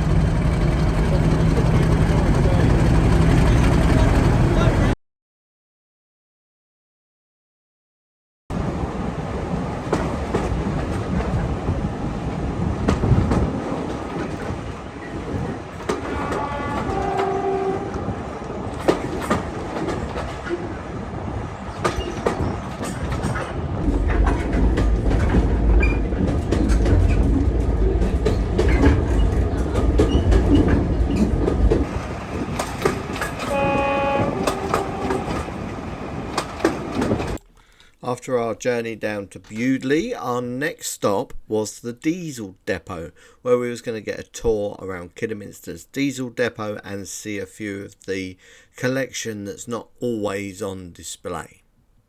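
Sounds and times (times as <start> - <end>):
train wheel clatter: 0.0 - 4.9, 9.4 - 37.5
low rumble: 0.0 - 5.0, 23.6 - 37.4
train horn: 16.0 - 19.0, 33.4 - 35.8.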